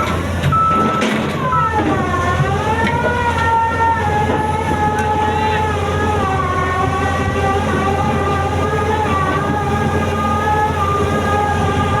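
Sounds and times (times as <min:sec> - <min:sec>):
drilling rig engine hum: 0:00.0 - 0:12.0
wavering multi-tone whine: 0:00.0 - 0:12.0.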